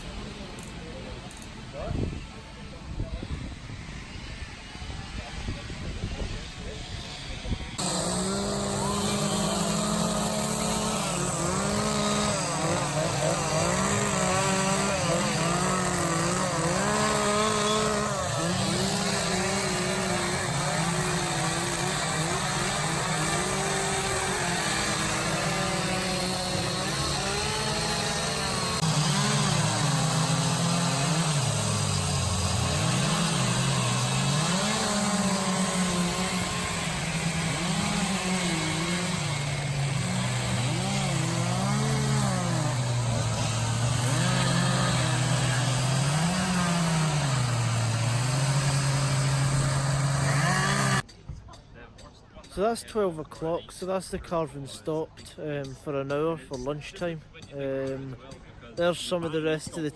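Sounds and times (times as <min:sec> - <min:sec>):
chainsaws cutting wood: 0:07.8 - 0:51.1.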